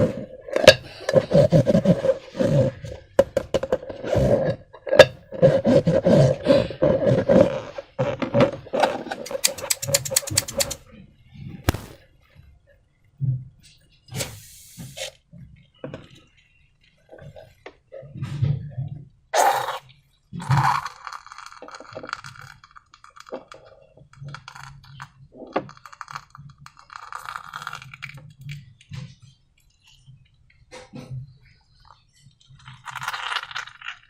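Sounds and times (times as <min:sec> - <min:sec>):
slime and balloon handling: 0:11.7 - 0:12.0.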